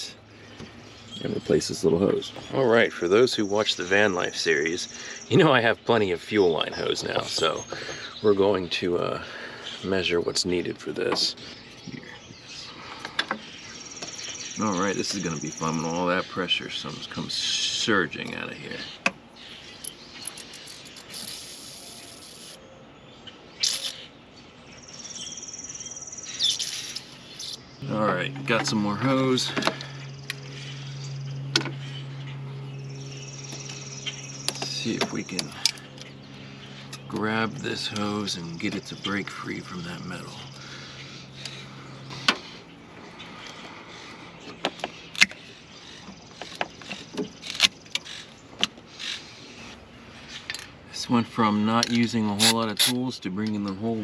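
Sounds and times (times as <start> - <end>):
high steady buzzing trill: 26.5 - 38.6.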